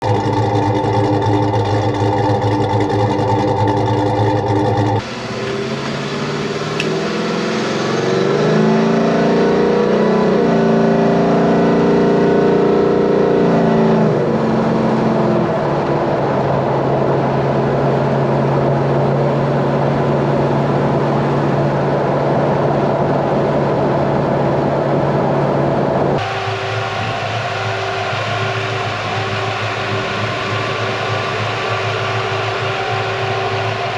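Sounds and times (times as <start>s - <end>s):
car engine revving and idling: 0.0s - 33.9s.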